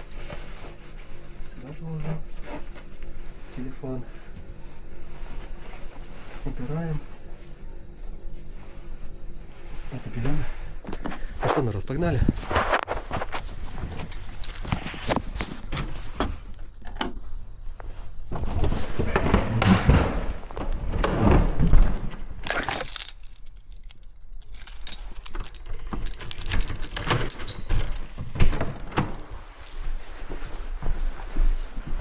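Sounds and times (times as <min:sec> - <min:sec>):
keys jangling: 0:13.3 - 0:15.2, 0:22.4 - 0:30.4
handling knocks: 0:19.0 - 0:30.1.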